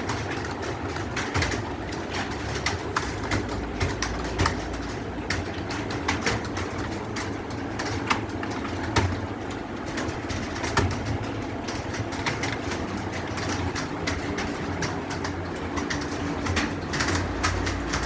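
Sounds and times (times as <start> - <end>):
computer keyboard typing: 10.0 - 18.0.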